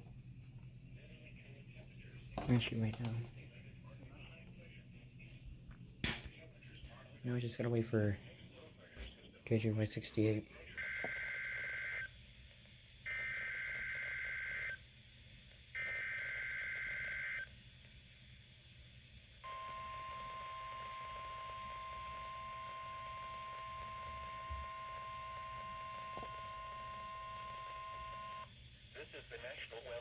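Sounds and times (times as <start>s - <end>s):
steady warning alarm tone: 10.8s - 12.2s, 13.0s - 14.9s, 15.7s - 17.6s, 19.4s - 28.7s.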